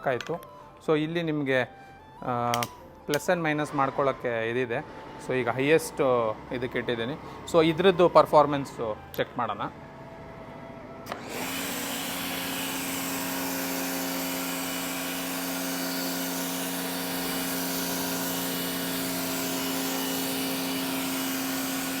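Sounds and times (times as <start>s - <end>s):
pressure washer motor hum: 11.0s - 22.0s
spray hissing: 11.6s - 22.0s.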